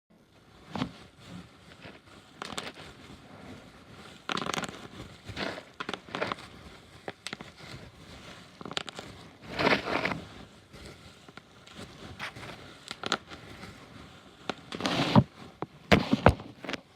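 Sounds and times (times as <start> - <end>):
plastic crinkling: 0.5 - 16.9
bubble wrap popping: 2.4 - 2.8, 4.2 - 7.6, 8.5 - 9.1, 11.3 - 13.4.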